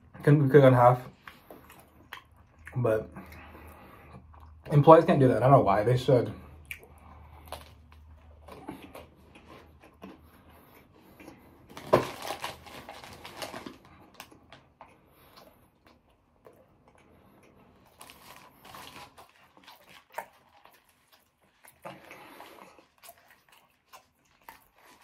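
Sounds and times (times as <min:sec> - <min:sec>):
chewing and mouth clicks: 0:01.0 - 0:04.8, 0:06.5 - 0:11.8, 0:14.1 - 0:25.0.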